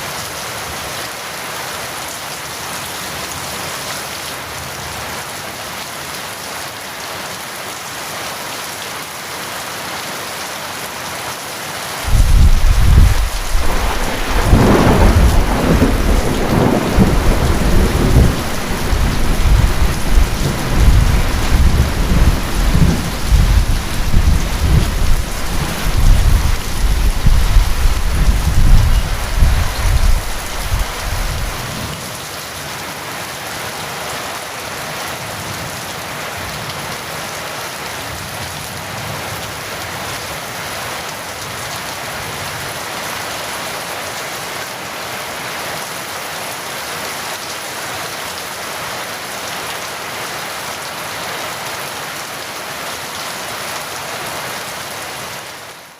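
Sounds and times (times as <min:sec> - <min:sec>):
heavy rain: 0:00.0 - 0:55.9
thunder rumbling: 0:12.1 - 0:31.8.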